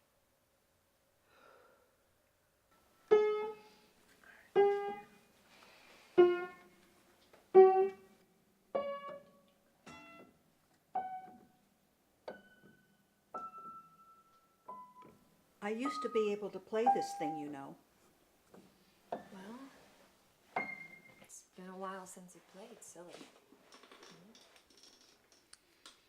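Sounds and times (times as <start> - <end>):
slow single piano notes: 8.8 - 11.6.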